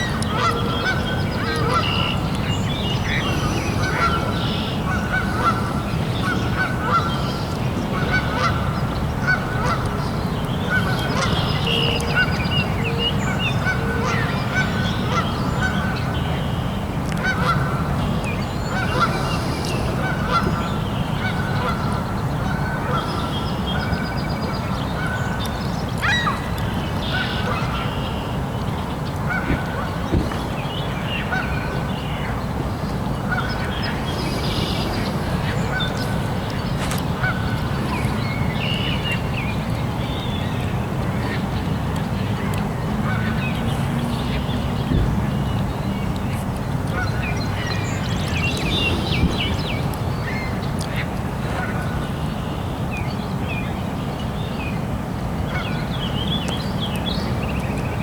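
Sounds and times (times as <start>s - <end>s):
birds honking: 0.0s - 16.0s, 17.2s - 24.1s, 29.2s - 39.7s, 46.8s - 52.1s
steady low rumble: 32.3s - 41.2s.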